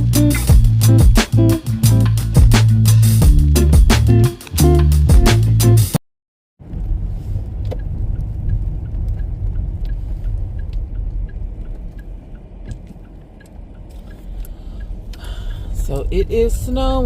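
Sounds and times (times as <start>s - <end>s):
car road and engine rumble: 6.6s - 17.0s
faint regular ticking: 7.6s - 17.0s.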